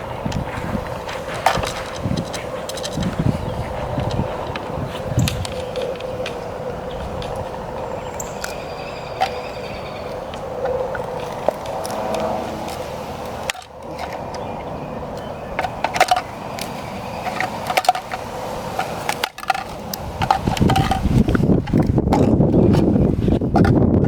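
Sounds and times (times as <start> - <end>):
low rumble: 10.9 - 15.1
hand tools cutting metal can: 11.4 - 14.4, 15.6 - 23.8.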